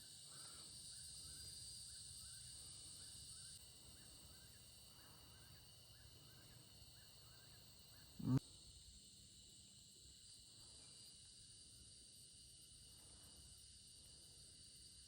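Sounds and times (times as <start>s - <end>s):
insect chirps: 0.0s - 15.0s
insect chorus buzzing: 0.0s - 15.0s
short voice sound: 8.2s - 8.4s.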